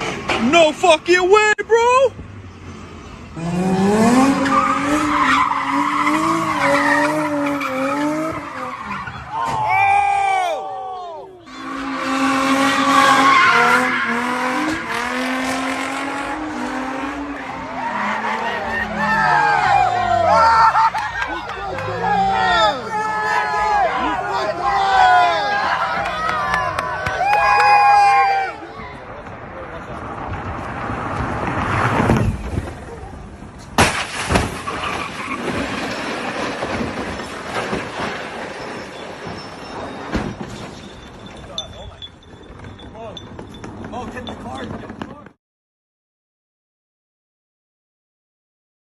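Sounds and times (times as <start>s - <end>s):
vehicle rumbling: 0.0s - 45.4s
car engine revving: 2.2s - 8.9s, 11.5s - 20.6s
sharp bang: 33.8s - 35.7s.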